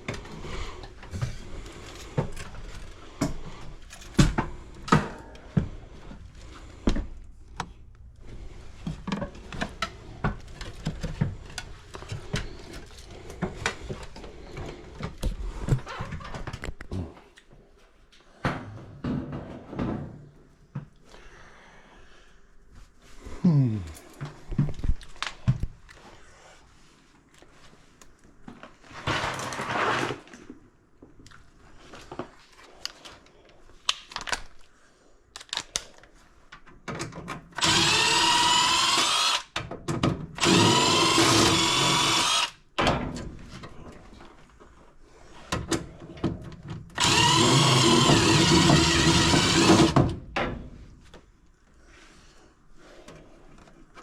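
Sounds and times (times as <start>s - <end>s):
power drill running: 37.6s - 39.6s, 40.4s - 42.6s, 47.0s - 50.0s.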